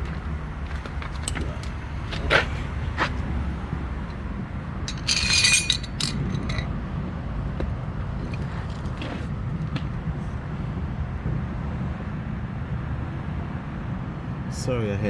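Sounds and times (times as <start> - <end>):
steady low rumble: 0.0 - 14.6
tools clinking and knocking: 0.1 - 3.3, 4.0 - 6.8, 7.5 - 10.0.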